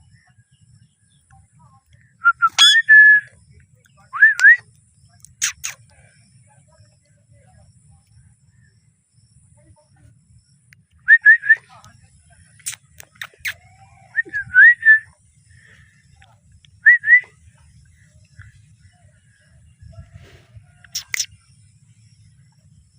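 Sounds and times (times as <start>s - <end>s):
parrot whistled chirps: 2.2s - 3.3s, 11.1s - 11.6s, 16.8s - 17.3s, 20.9s - 21.3s.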